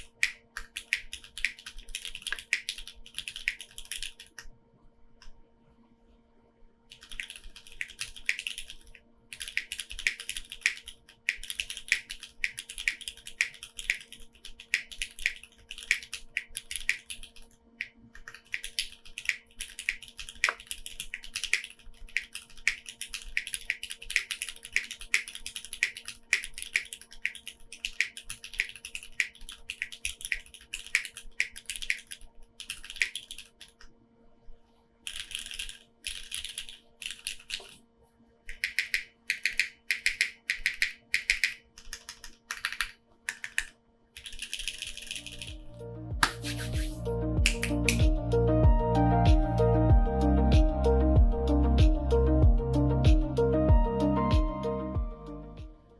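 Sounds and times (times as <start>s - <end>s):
mechanical keyboard typing: 0.0s - 4.5s, 6.9s - 33.8s, 35.1s - 37.8s, 38.5s - 45.6s, 46.2s - 48.0s.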